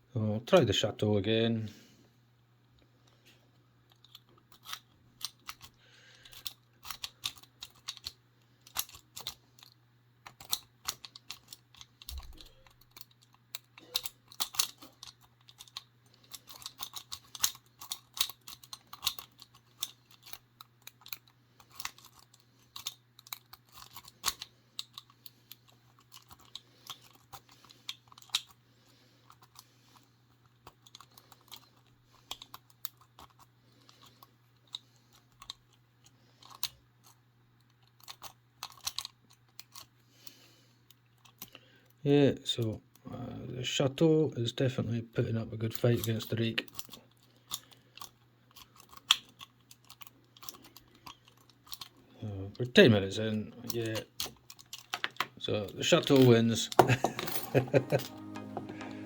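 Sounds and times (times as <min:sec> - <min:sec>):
lock-pick rake clicking on padlock: 0:10.2 - 0:28.6.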